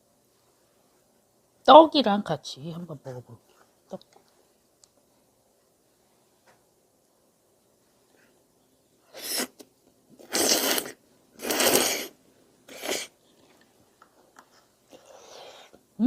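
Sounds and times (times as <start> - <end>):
slurping noodles: 9.1 - 13.2.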